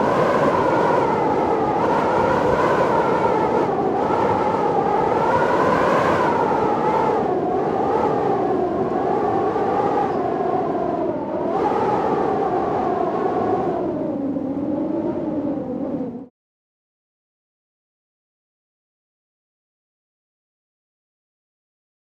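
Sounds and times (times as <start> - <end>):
storm wind howling: 0.0 - 16.3.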